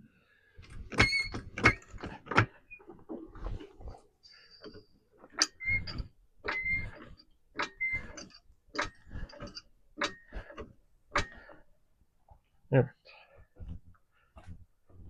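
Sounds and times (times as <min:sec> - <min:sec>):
car jack clanking and squeaking: 0:00.6 - 0:03.2, 0:04.2 - 0:11.7.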